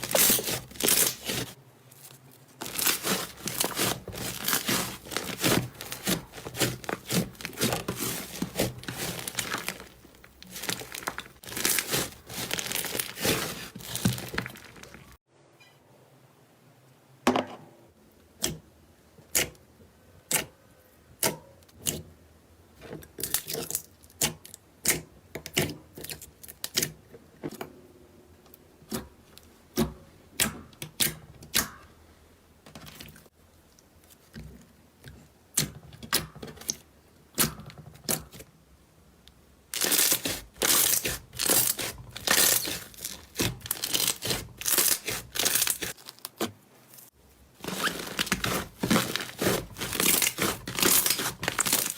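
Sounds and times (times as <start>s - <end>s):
slime popping and crackling: 0.0s - 1.6s, 2.6s - 15.2s, 39.8s - 46.5s, 47.6s - 51.9s.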